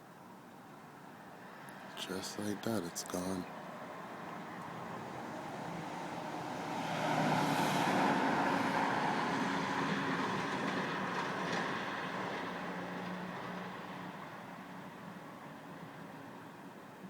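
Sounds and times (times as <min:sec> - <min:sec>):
vehicle passing by: 0:05.0 - 0:14.1.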